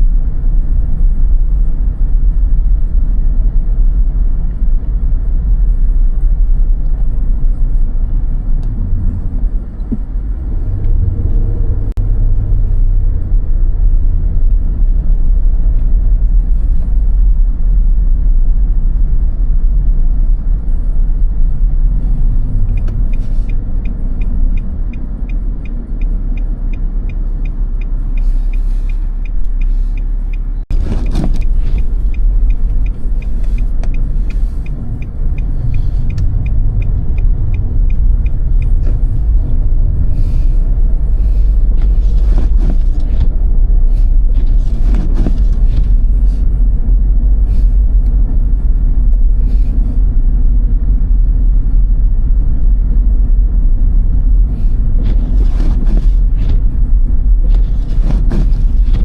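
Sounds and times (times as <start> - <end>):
car engine and tyres rumbling: 0.0 - 59.0
light ticking: 22.4 - 40.1.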